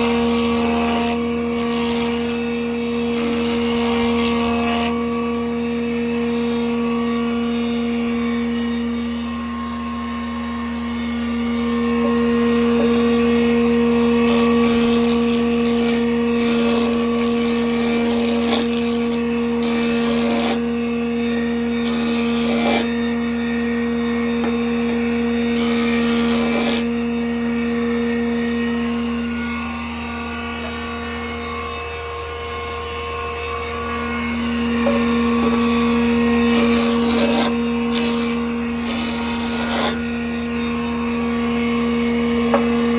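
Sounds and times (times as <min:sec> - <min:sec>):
saw blade cutting wood: 0:00.0 - 0:05.5, 0:11.6 - 0:28.6, 0:33.8 - 0:41.0
band saw motor hum: 0:00.0 - 0:42.9.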